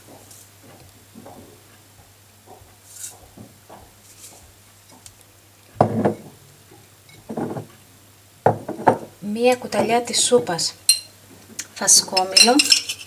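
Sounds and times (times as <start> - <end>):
spoon knocking and clinking: 10.9 - 11.1, 12.1 - 13.0.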